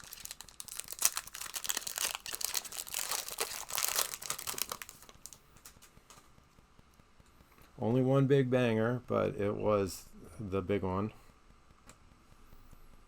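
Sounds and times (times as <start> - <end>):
plastic wrapper crinkling: 0.0 - 6.3.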